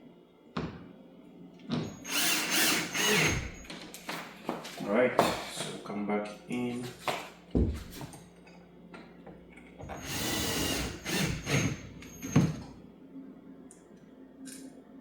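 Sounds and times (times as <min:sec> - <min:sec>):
cordless drill driving screw: 0:01.8 - 0:03.6, 0:09.9 - 0:12.6.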